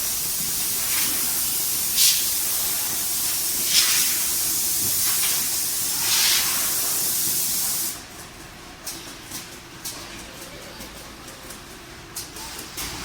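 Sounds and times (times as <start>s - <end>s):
packing machine hissing: 0.0s - 8.0s.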